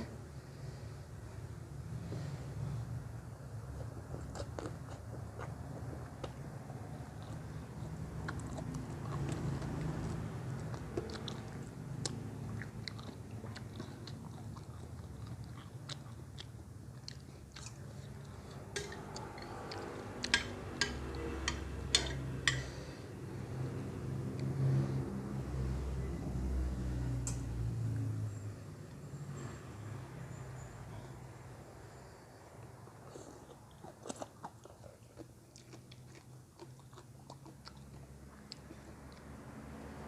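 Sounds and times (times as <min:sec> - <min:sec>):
chewing crisp food: 0:03.5 - 0:22.8, 0:32.7 - 0:40.0.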